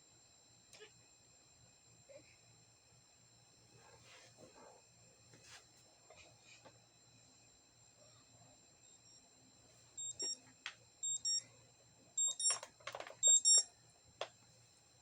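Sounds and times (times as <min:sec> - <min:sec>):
high-pitched electronic beeps: 0:10.0 - 0:10.4, 0:11.0 - 0:11.4, 0:12.2 - 0:12.6, 0:13.2 - 0:13.7.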